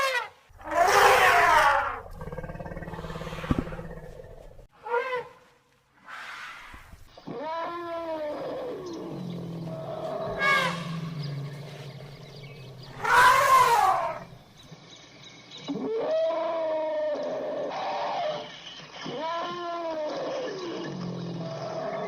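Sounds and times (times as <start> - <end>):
mammoth calls: 7.2 - 14.4.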